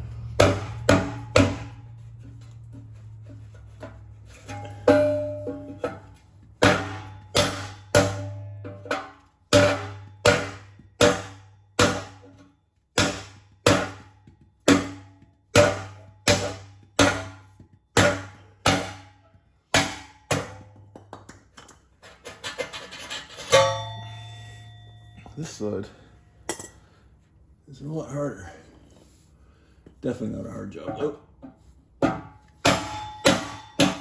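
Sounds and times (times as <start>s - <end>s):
metal exhaust tip ringing: 0.0s - 2.6s, 3.9s - 12.4s, 23.4s - 26.9s, 32.5s - 34.0s.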